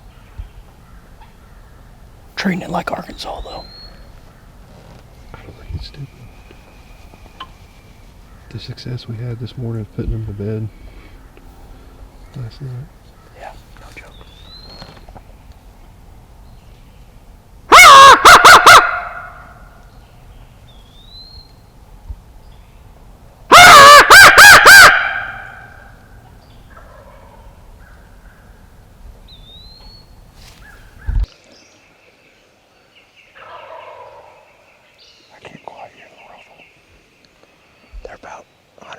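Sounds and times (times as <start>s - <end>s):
turkey gobbling: 17.7s - 19.6s, 23.5s - 25.9s, 26.7s - 27.6s, 33.4s - 34.4s.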